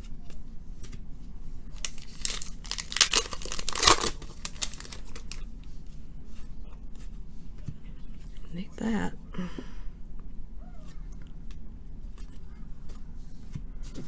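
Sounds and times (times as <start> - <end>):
wrapper tearing and crinkling: 1.7 - 5.4.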